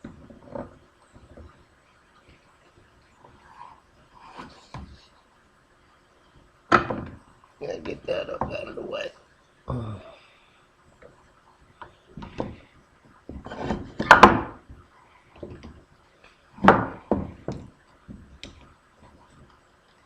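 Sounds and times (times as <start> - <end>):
wood knocks and thunks: 0.0 - 1.7, 4.4 - 5.0, 6.3 - 8.7, 11.8 - 19.6.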